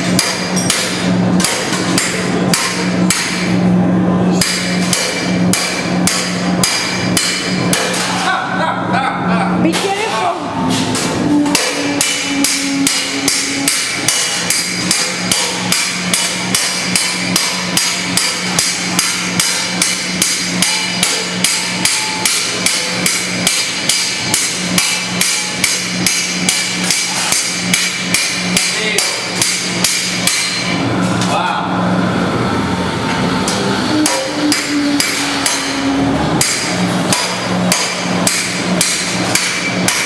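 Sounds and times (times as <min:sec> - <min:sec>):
cymbal ringing: 0:11.5 - 0:16.2
hammer striking cymbal: 0:11.5 - 0:30.8, 0:34.0 - 0:40.0.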